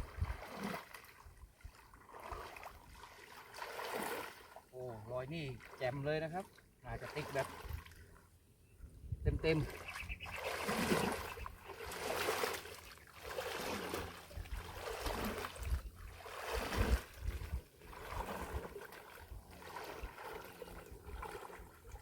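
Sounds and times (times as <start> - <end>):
water splashing and dripping: 0.0 - 4.6, 9.5 - 22.0.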